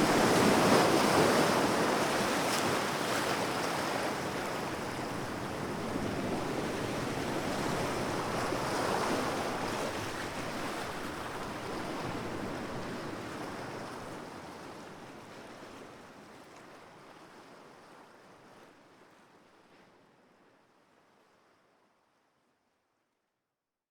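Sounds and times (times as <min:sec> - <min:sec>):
sea waves washing onto beach: 0:00.0 - 0:14.1.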